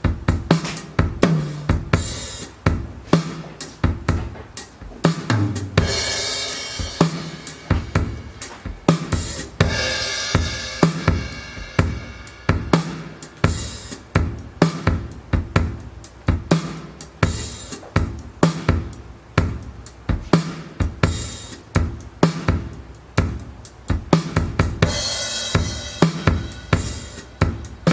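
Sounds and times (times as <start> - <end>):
drum kit playing a beat: 0.0 - 27.9
cymbal crash: 5.6 - 14.0.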